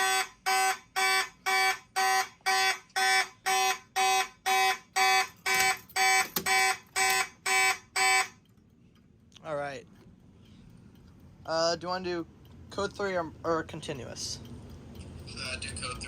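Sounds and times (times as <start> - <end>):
fire alarm horns blasting: 0.0 - 8.4.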